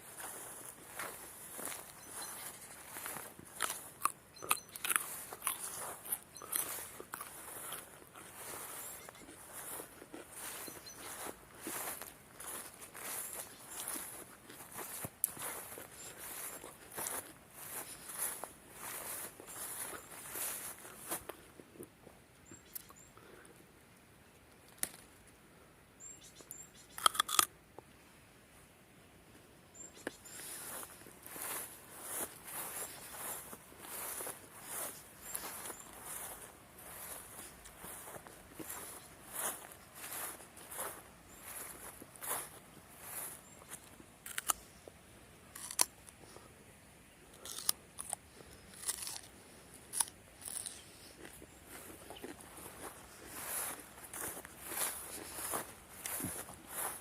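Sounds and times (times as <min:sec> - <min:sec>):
small bird chirping: 0:01.4 - 0:07.8, 0:08.4 - 0:20.6, 0:26.0 - 0:27.1, 0:29.8 - 0:43.9
crisp snips and crunches: 0:02.7 - 0:07.9, 0:27.0 - 0:27.5, 0:44.2 - 0:44.6, 0:45.5 - 0:46.2, 0:47.4 - 0:52.9
loud cracks or crunches: 0:27.0 - 0:27.5, 0:45.6 - 0:46.0, 0:47.4 - 0:48.2, 0:48.8 - 0:49.3.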